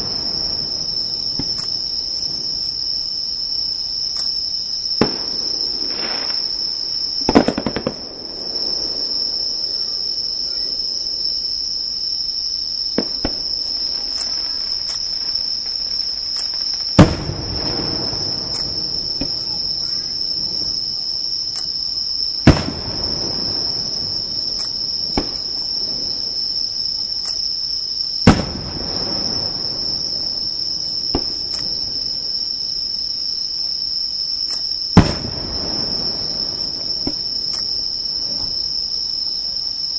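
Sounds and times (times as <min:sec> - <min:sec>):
small fireworks pops: 0:00.0 - 0:02.8, 0:04.1 - 0:10.9, 0:12.8 - 0:27.5, 0:28.2 - 0:30.0, 0:31.0 - 0:32.4, 0:34.4 - 0:38.8
fireworks crackle: 0:00.0 - 0:33.0, 0:34.4 - 0:39.7
fireworks booming: 0:00.0 - 0:33.3, 0:34.4 - 0:39.9
insect trill: 0:00.0 - 0:39.9.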